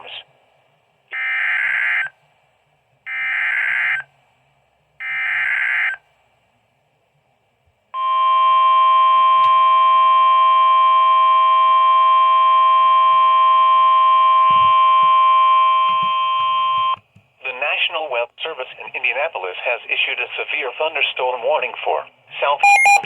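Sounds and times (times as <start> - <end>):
steady warning alarm tone: 8.0 - 17.0, 22.6 - 23.0
data bursts: 22.6 - 23.0.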